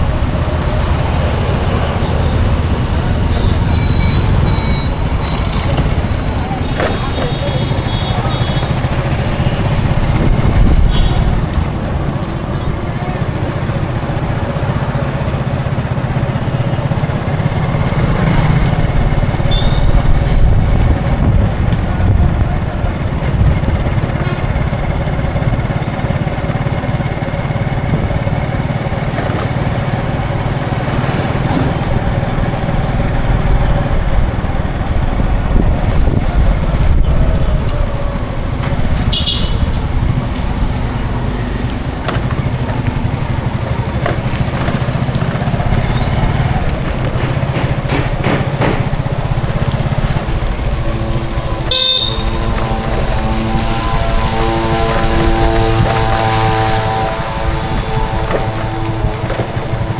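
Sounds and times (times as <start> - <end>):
motorcycles passing: 0.0 - 59.9
road traffic rumble: 0.0 - 59.9.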